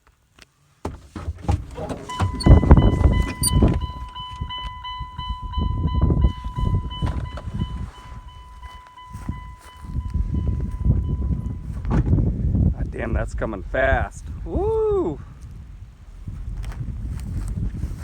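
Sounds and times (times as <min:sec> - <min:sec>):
wind buffeting microphone: 0:01.6 - 0:18.0.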